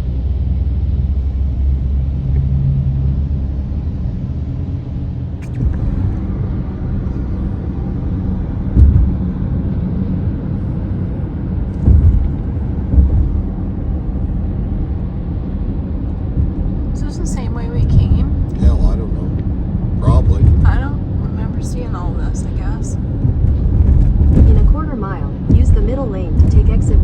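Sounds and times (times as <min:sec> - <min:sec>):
car driving rumble from inside: 0:00.0 - 0:27.0
dull thumps: 0:08.7 - 0:09.4, 0:11.7 - 0:13.9, 0:23.2 - 0:27.0.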